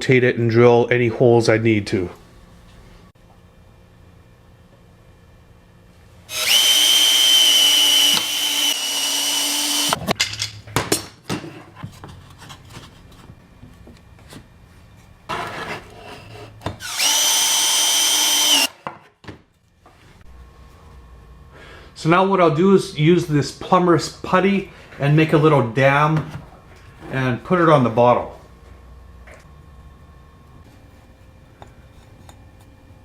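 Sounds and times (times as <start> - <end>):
power drill motor whining: 6.3 - 10.0, 16.8 - 18.8.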